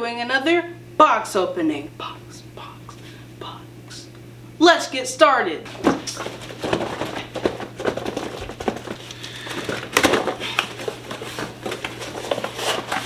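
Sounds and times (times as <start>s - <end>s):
packaging rustling and crinkling: 5.7s - 13.0s.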